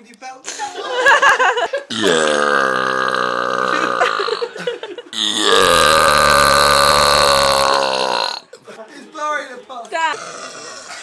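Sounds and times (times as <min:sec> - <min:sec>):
long loud belches: 0:01.9 - 0:08.5, 0:10.2 - 0:11.0.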